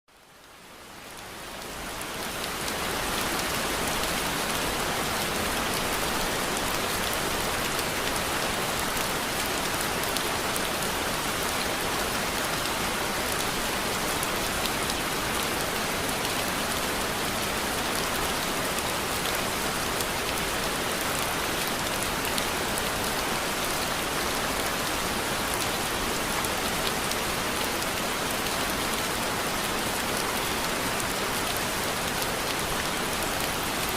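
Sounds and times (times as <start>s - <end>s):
steady rain falling: 0.1s - 33.9s.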